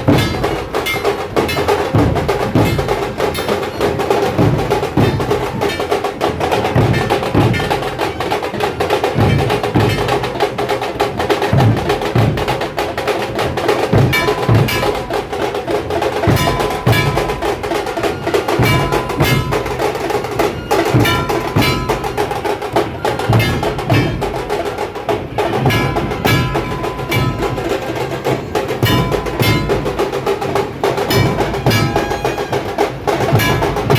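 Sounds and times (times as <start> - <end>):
dhol drums beating low rhythm: 0.0 - 33.9
rapid tasha stick strokes: 0.0 - 33.9
held high tone: 25.6 - 33.9.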